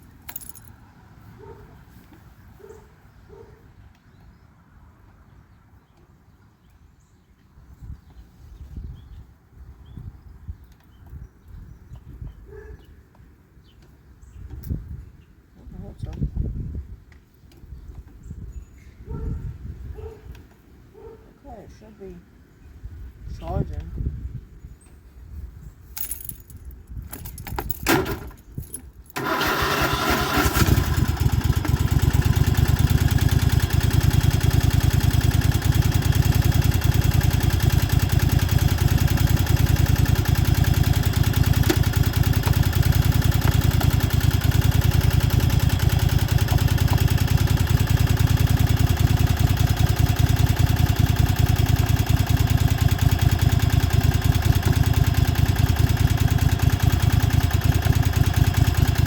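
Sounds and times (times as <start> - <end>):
lawnmower engine running: 29.2 - 59.0
starter clicks: 36.7 - 50.1.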